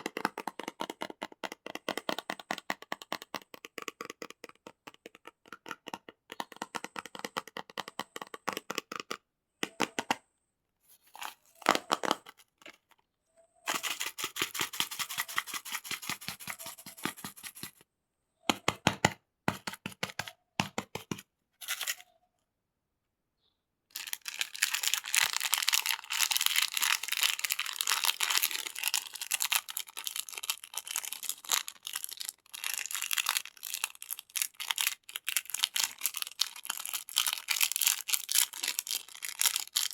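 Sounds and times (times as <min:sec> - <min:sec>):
plastic wrappers crinkling: 0:10.9 - 0:12.6, 0:21.6 - 0:22.0, 0:23.9 - 0:39.9.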